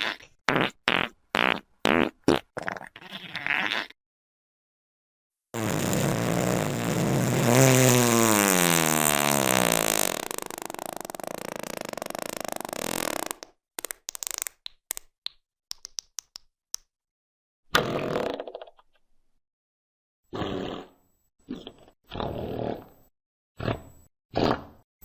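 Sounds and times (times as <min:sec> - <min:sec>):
long fart with falling pitch: 0:00.0 - 0:04.0, 0:05.6 - 0:13.6, 0:17.7 - 0:18.6, 0:20.3 - 0:22.8
short fart pops: 0:00.0 - 0:04.0, 0:05.6 - 0:15.1, 0:17.7 - 0:18.7.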